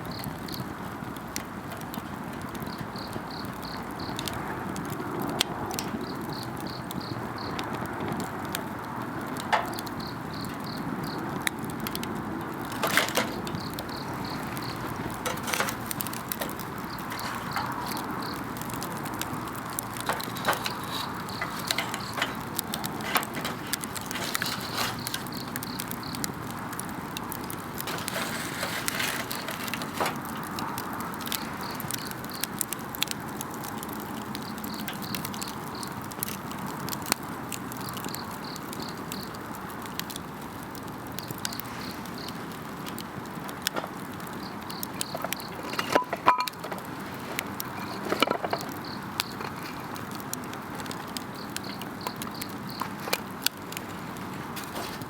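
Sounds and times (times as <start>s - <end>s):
campfire crackling and popping: 0.0s - 55.0s
insects chirping: 2.6s - 4.2s, 6.0s - 7.8s, 9.7s - 11.4s, 12.1s - 32.6s, 34.3s - 36.0s, 37.8s - 39.6s, 41.1s - 42.5s, 44.2s - 50.0s, 50.6s - 53.3s.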